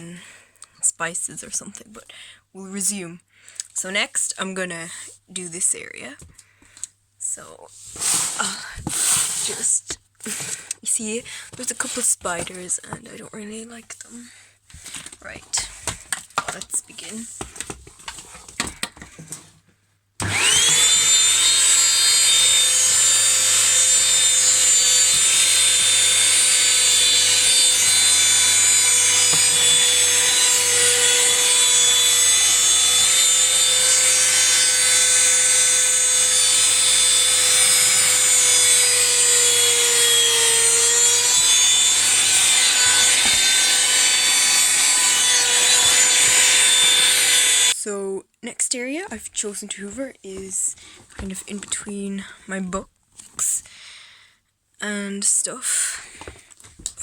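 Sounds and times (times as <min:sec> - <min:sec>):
vacuum cleaner motor whine: 0:20.2 - 0:47.8.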